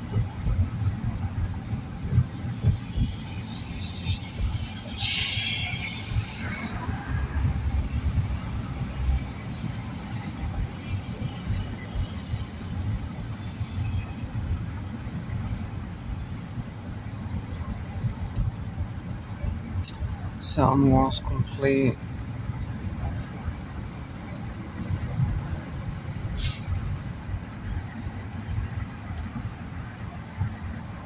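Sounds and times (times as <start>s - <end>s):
car tyre and engine rumble: 0.0s - 31.0s
brief hissing rush: 4.9s - 7.0s, 26.3s - 26.7s.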